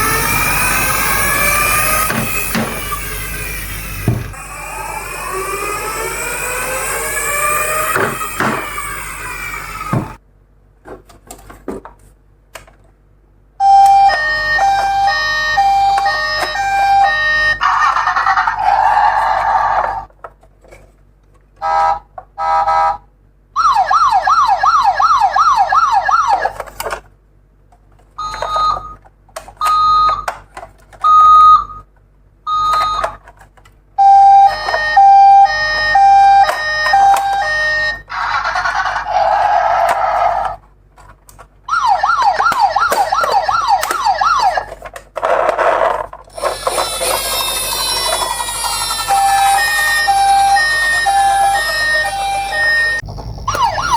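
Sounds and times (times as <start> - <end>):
electronic siren yelp: 0.0 - 10.2, 13.6 - 20.1, 23.6 - 26.6, 34.0 - 40.6, 41.7 - 44.8, 46.4 - 53.9
high-low two-tone siren: 0.0 - 10.2, 13.6 - 17.9, 23.6 - 26.6, 34.0 - 38.1, 41.7 - 44.8, 46.4 - 53.9.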